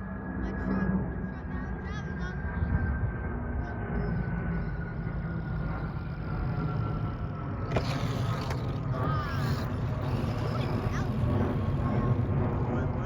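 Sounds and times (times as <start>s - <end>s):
wind rumble on microphone: 2.4s - 13.0s
electric toy car motors whining: 4.6s - 13.0s.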